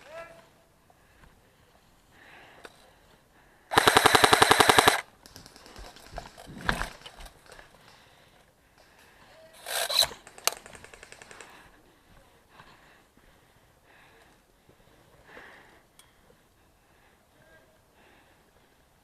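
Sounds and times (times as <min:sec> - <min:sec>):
airsoft gun full-auto firing: 0:03.7 - 0:05.8.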